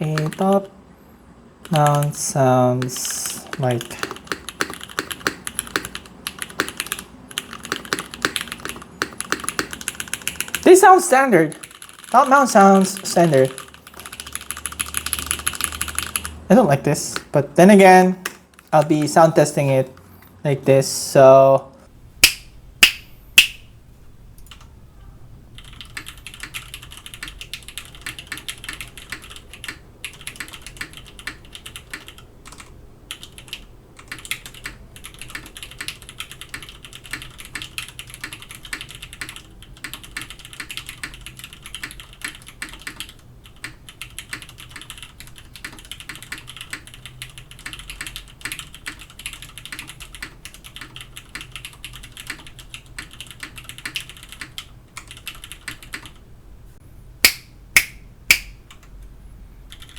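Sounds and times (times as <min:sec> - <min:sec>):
mechanical keyboard keystroke clacks: 0:00.0 - 0:00.6, 0:01.6 - 0:02.2, 0:02.8 - 0:10.8, 0:11.5 - 0:16.4.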